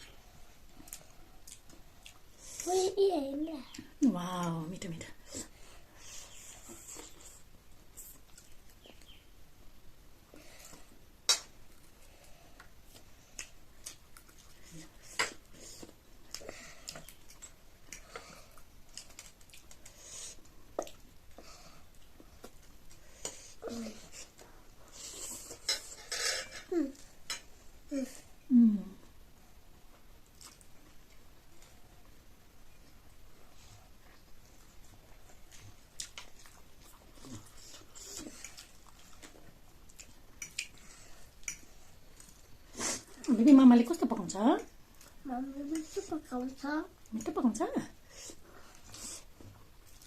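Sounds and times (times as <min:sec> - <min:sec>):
chewing and mouth smacks: 0:34.0 - 0:42.6.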